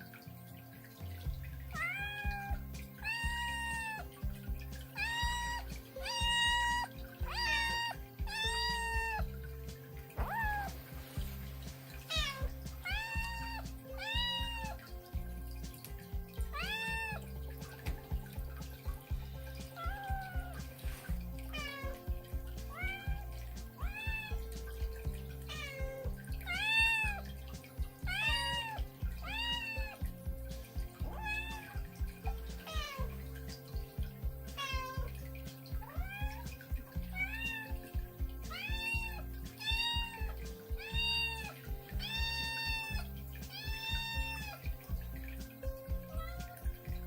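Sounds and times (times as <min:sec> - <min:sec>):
kitten meowing: 0:01.8 - 0:04.0, 0:05.0 - 0:09.2, 0:10.2 - 0:10.8, 0:12.1 - 0:14.8, 0:16.6 - 0:17.2, 0:19.8 - 0:20.6, 0:21.5 - 0:22.0, 0:22.7 - 0:23.2, 0:23.8 - 0:24.4, 0:25.5 - 0:27.2, 0:28.1 - 0:30.0, 0:31.1 - 0:31.8, 0:32.6 - 0:33.1, 0:34.5 - 0:35.1, 0:38.5 - 0:44.6, 0:46.1 - 0:46.6.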